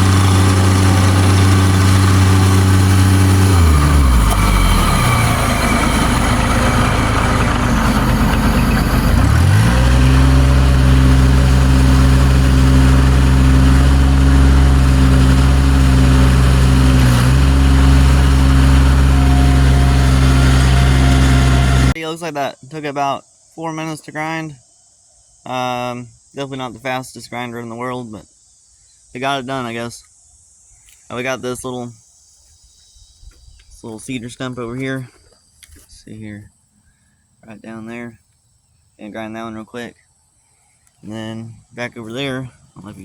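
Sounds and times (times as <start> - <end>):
loader engine running: 0.0 - 22.0
stump grinder: 0.0 - 22.0.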